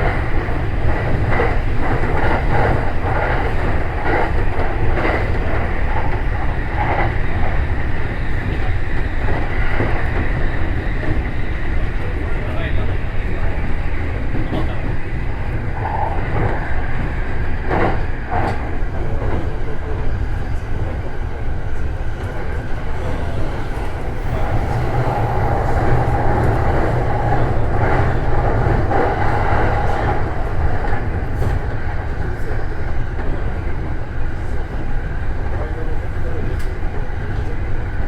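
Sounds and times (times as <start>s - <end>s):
train rumbling: 0.0s - 38.0s
train motor whine: 22.9s - 29.4s.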